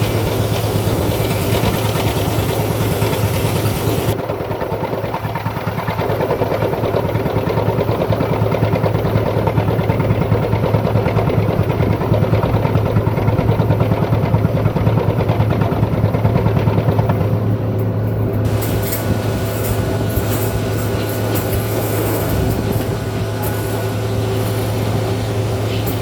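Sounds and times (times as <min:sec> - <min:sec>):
drilling machine engine throbbing: 0:00.0 - 0:04.2, 0:18.3 - 0:26.0.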